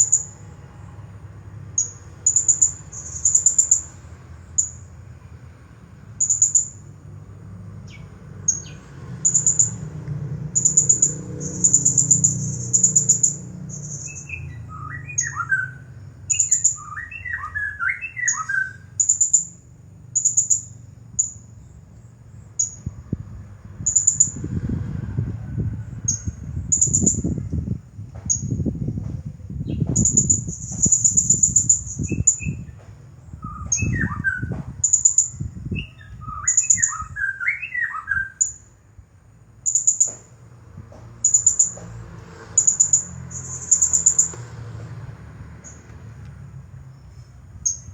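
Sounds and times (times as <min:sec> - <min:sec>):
parrot chirping and trilling: 0:10.6 - 0:19.6.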